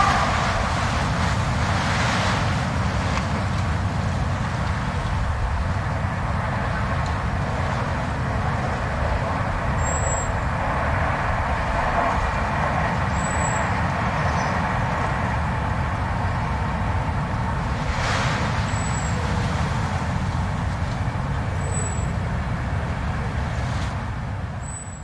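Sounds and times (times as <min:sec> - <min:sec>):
thin high whistles: 0:00.0 - 0:01.4
blizzard wind howling: 0:00.0 - 0:21.4.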